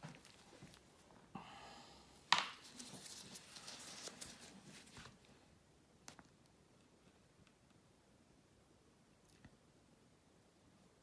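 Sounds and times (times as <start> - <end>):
plastic tube rustle: 2.3 - 5.3.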